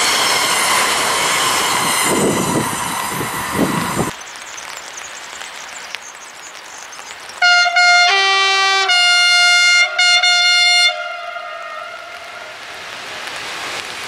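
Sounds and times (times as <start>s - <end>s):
train horn blasts: 7.4s - 12.7s.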